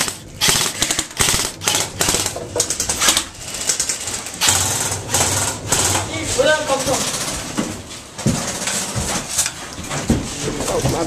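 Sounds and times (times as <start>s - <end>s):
airsoft guns firing: 0.0s - 3.2s.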